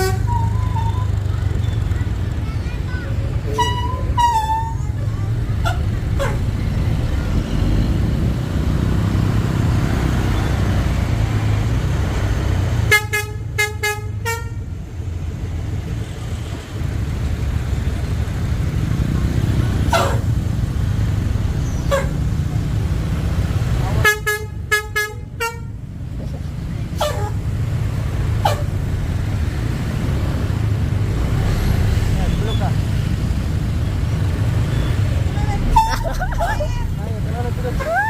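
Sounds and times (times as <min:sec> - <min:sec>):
musical bus horn: 0:00.0 - 0:01.2, 0:03.5 - 0:04.8, 0:12.8 - 0:14.8, 0:19.9 - 0:20.3, 0:24.0 - 0:25.8, 0:27.0 - 0:27.4, 0:28.4 - 0:28.8, 0:35.6 - 0:36.2
engine and road rumble: 0:00.0 - 0:38.0.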